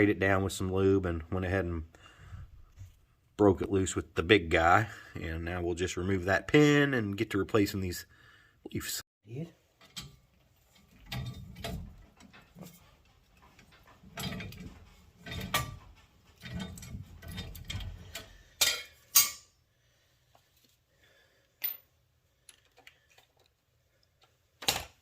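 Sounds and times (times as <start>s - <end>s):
sharp metal clanks: 14.1s - 19.5s.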